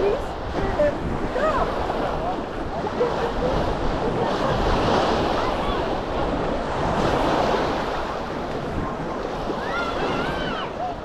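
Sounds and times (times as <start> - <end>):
sea waves washing onto shore: 0.0 - 11.0
wind buffeting microphone: 0.0 - 11.0.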